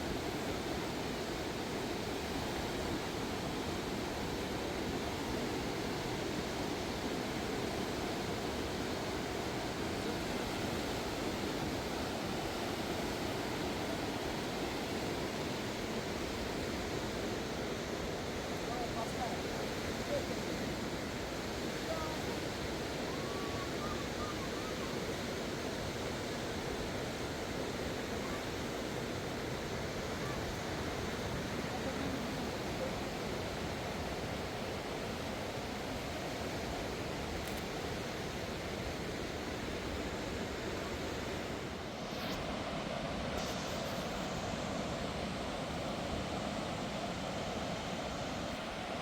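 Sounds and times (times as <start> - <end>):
river water roaring: 0.0 - 49.0.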